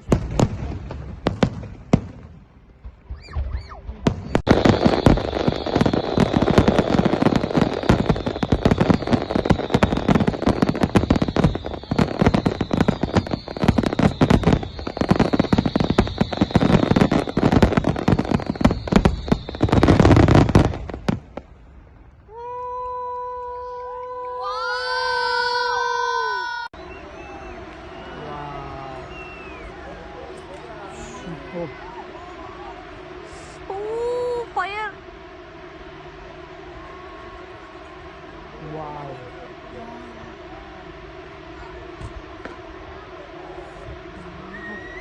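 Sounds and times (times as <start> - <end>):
firework bangs: 0.0 - 22.0, 24.7 - 45.0
firework crackle: 0.0 - 45.0
steady pitched tone: 25.2 - 45.0.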